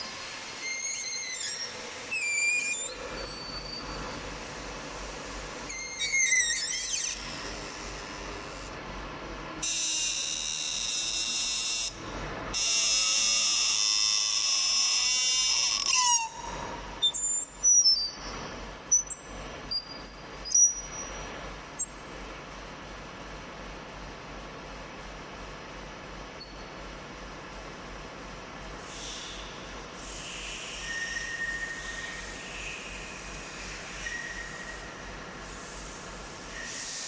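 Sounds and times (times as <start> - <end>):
steady low hum: 2.9 - 5.8, 7.2 - 9.6, 18.1 - 30.9.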